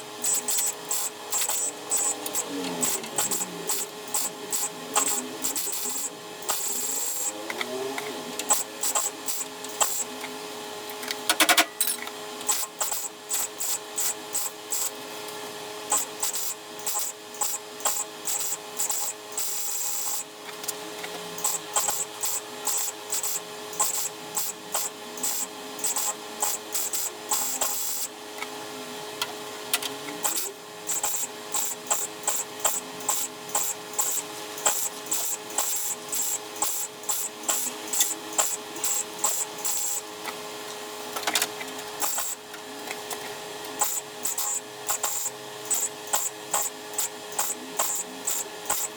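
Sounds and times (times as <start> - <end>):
generator humming: 0.0 - 11.4.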